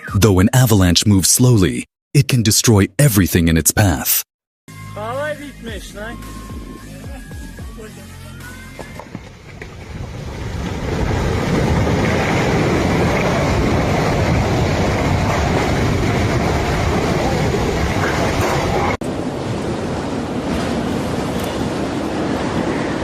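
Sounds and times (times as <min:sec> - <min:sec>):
avalanche rushing roar: 0:09.2 - 0:23.0.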